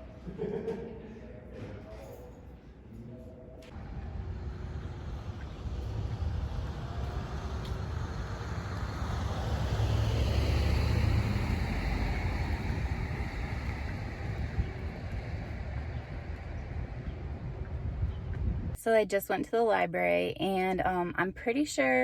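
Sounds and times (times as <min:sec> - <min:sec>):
steady low rumble: 0:03.7 - 0:18.8
vehicle passing by: 0:03.7 - 0:18.8.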